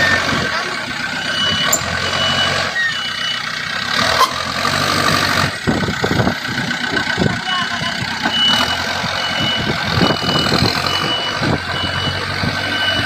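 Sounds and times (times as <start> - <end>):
diesel engines running: 0.0 - 13.0
reversing alarm beeping: 1.2 - 3.5, 7.7 - 13.0.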